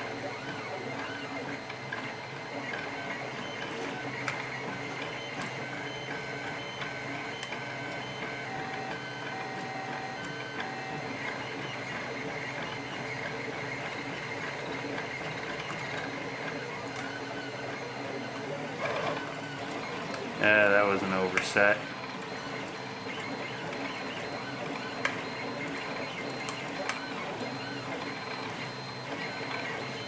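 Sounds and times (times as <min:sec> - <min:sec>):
printers whirring: 0:00.0 - 0:30.0
motor whines stepping pitch: 0:00.1 - 0:30.0.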